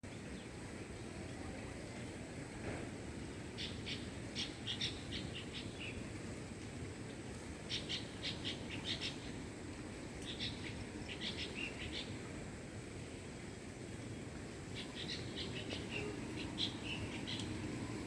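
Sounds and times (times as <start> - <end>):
songbird chirping: 14.7 - 18.0.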